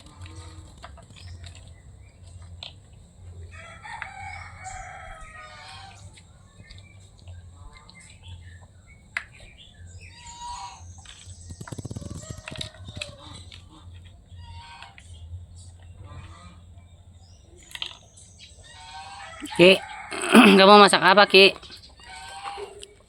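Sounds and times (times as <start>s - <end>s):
chicken calls: 11.6s - 13.5s, 18.6s - 22.9s.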